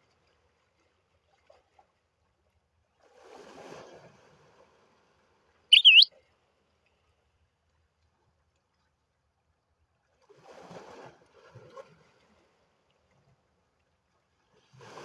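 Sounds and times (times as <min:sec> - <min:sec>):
high bending chirp: 0:05.7 - 0:06.1.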